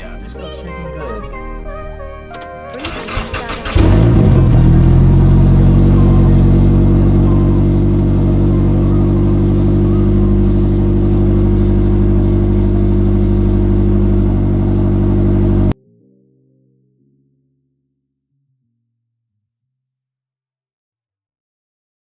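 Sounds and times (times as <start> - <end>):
car engine idling: 2.8 - 15.7.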